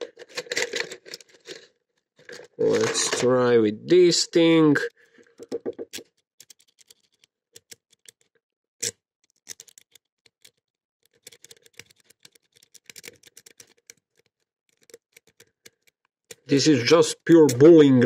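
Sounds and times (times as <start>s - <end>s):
small metallic clicks: 5.0s - 16.5s
lock pick raking in padlock: 5.9s - 16.5s.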